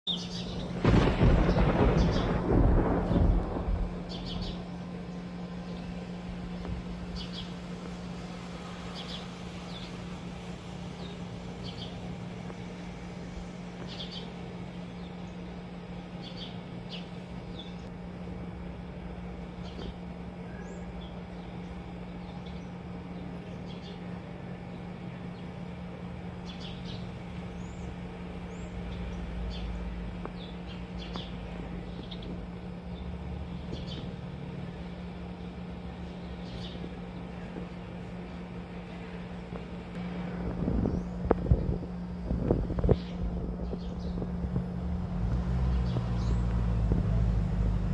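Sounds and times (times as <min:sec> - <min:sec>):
small birds chirping: 0:00.1 - 0:17.9, 0:19.4 - 0:44.8, 0:45.6 - 0:47.2
steady low hum: 0:00.1 - 0:47.9.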